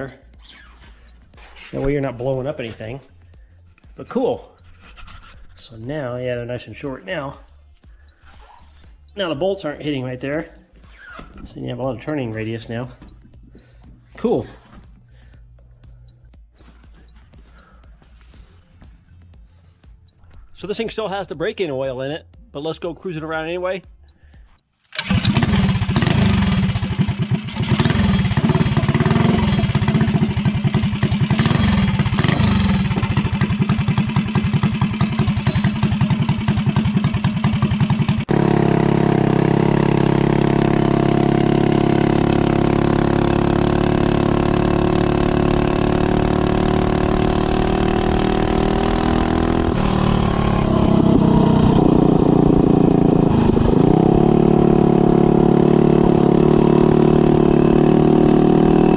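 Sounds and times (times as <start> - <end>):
minibike engine running: 25.0 - 58.9.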